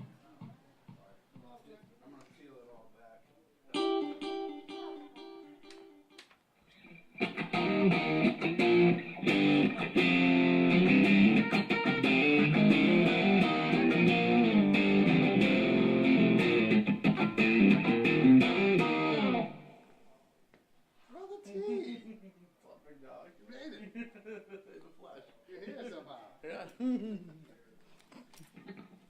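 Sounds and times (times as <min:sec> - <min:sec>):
electric guitar with effects: 0:03.7 - 0:19.7.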